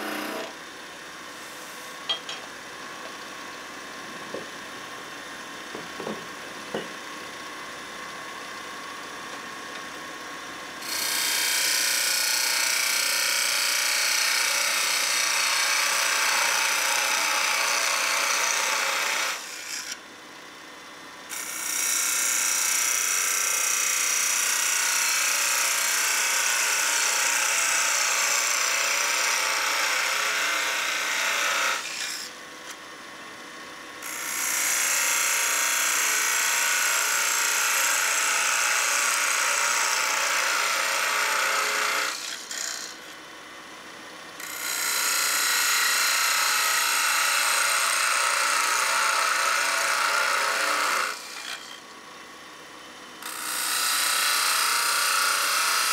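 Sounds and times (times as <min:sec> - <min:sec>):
lathe tool cutting wood: 0:00.0 - 0:00.6, 0:10.8 - 0:20.0, 0:24.2 - 0:32.3, 0:34.0 - 0:43.1, 0:44.4 - 0:51.8, 0:53.2 - 0:55.9.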